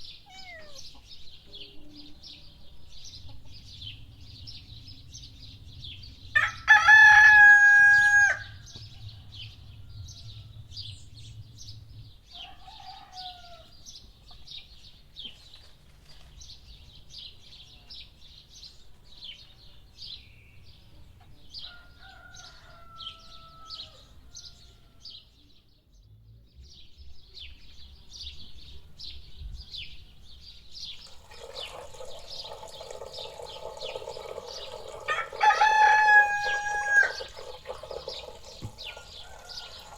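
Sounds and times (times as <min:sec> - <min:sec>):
small birds chirping: 0:00.0 - 0:06.3, 0:08.6 - 0:39.9
rooster crowing: 0:06.4 - 0:08.6, 0:12.3 - 0:13.7, 0:21.6 - 0:25.1, 0:35.0 - 0:37.8, 0:38.6 - 0:39.9.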